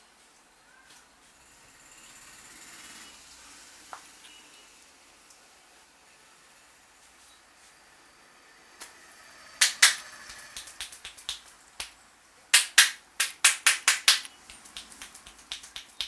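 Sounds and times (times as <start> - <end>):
hands clapping and snapping: 9.6 - 12.0, 12.6 - 16.0.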